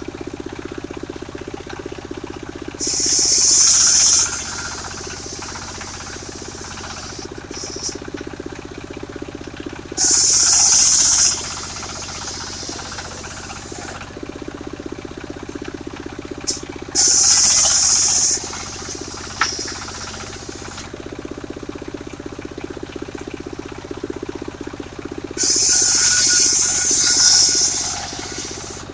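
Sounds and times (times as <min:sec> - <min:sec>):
sawmill engine humming: 0:00.0 - 0:28.9
saw cutting into wood: 0:02.8 - 0:08.0, 0:10.0 - 0:14.1, 0:17.0 - 0:20.9, 0:25.4 - 0:28.9.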